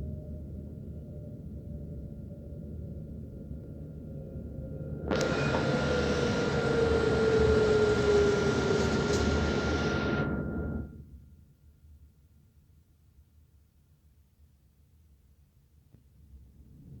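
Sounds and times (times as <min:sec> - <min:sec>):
motor whine falling in pitch: 0:05.1 - 0:11.0
tram rushing noise: 0:05.1 - 0:11.0.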